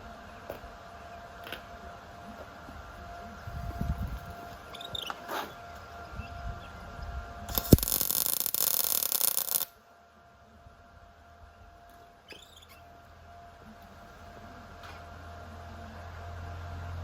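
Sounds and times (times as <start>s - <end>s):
welding arc sizzling crackle: 7.5s - 9.8s.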